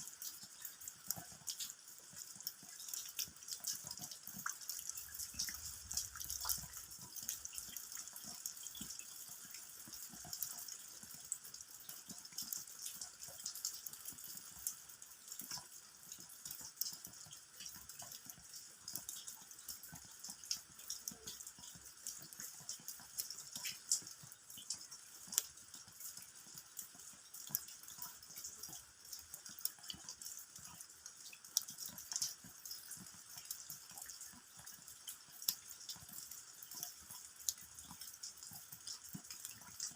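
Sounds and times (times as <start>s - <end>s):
rain drops striking ground: 0.0s - 39.9s
steady rain hiss: 4.5s - 8.8s.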